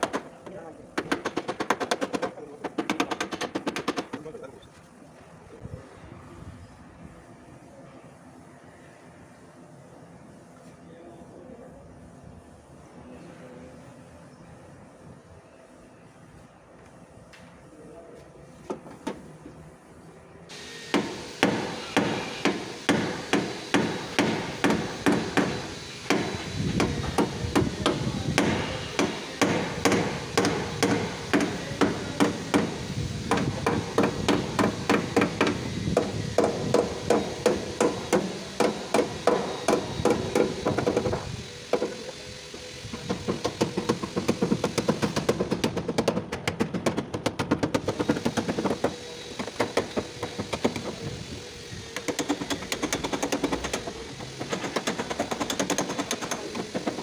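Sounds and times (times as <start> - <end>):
hammer striking sheet metal: 20.9 - 32.7.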